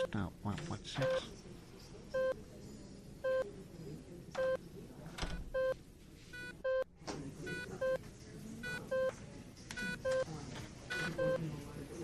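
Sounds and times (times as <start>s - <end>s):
patient monitor beeping: 0.0s - 0.3s, 1.0s - 1.3s, 2.1s - 2.5s, 3.2s - 3.6s, 4.4s - 4.6s, 5.4s - 11.6s
low background noise: 0.0s - 12.0s.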